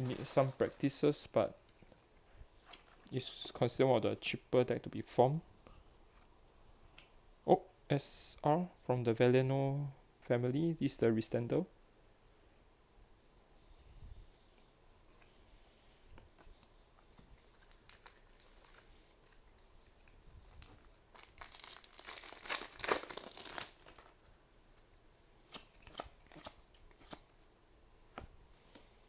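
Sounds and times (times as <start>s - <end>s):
foil pack tearing and crinkling: 0.0s - 0.9s, 20.7s - 24.2s.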